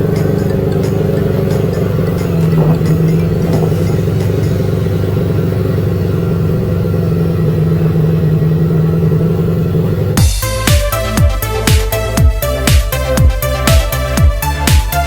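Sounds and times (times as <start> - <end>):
road noise: 0.0 - 15.0
vehicle engine drone: 0.0 - 15.0
electronic dance music: 10.2 - 15.0.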